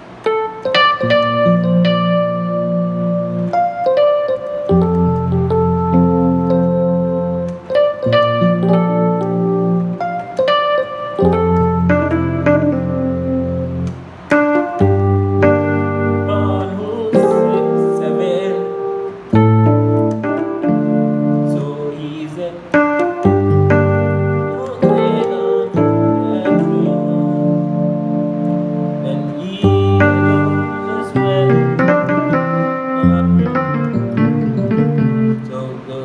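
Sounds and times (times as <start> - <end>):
keyboard playing gospel chords: 0.0 - 36.0.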